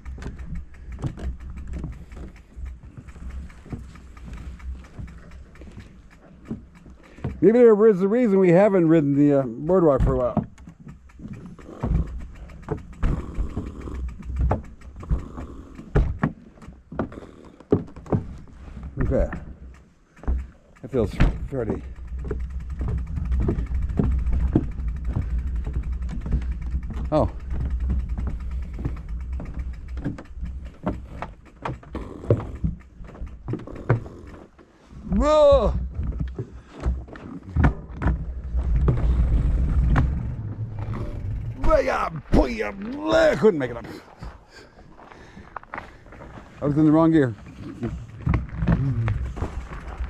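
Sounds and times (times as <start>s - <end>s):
bike tyres knocking wooden planks: 0.0s - 50.0s
low rumble: 21.2s - 30.8s, 37.6s - 43.4s, 47.3s - 50.0s.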